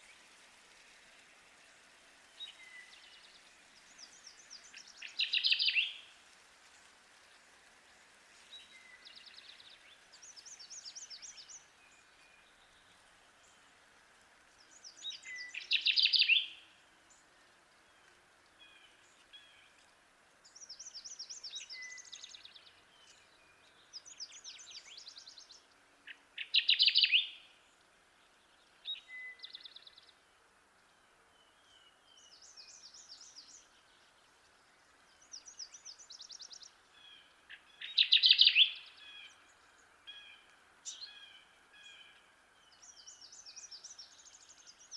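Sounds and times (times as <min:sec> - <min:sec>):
bird singing loud low song: 0:00.0 - 0:44.9
faint high trilled birdsong: 0:30.8 - 0:44.9.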